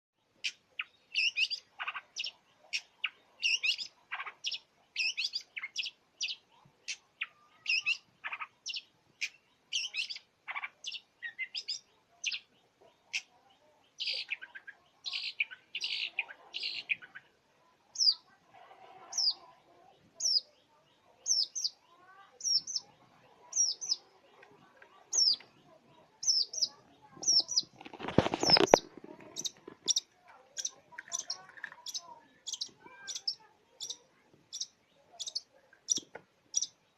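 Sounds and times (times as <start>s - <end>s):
bird singing fast varied song: 0.2s - 13.3s, 13.9s - 18.2s, 20.2s - 36.9s.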